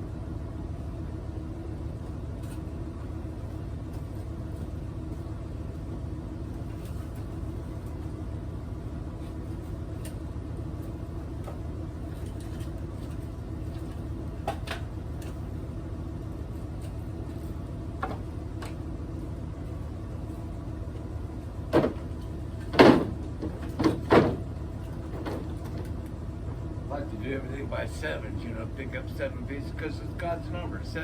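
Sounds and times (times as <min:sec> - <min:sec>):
low motor rumble: 0:00.0 - 0:31.0
loud sharp knocks: 0:22.7 - 0:24.4.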